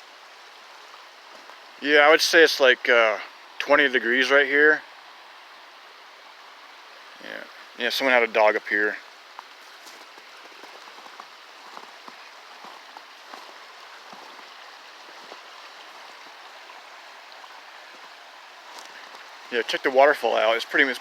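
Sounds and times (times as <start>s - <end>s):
rushing river and waterfall: 0.0s - 21.0s.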